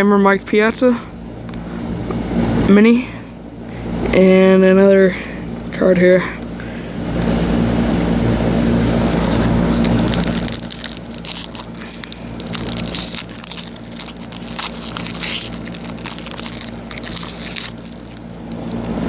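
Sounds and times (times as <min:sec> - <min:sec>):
low hum: 0:00.0 - 0:19.0
foil wrapper crinkling: 0:09.2 - 0:18.8.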